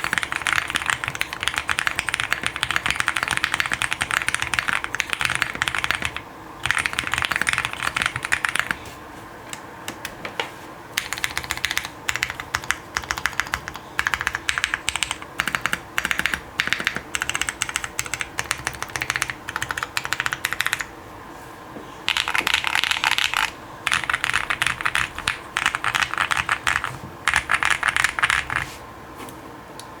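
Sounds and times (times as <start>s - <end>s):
fast typing on mechanical keyboard: 0.0s - 8.8s, 11.0s - 20.9s, 22.1s - 28.7s.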